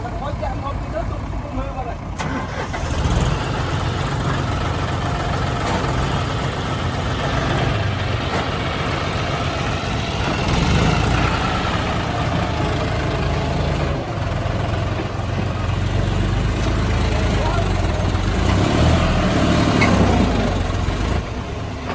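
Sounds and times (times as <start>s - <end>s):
heavy machine engine running: 0.0s - 21.9s.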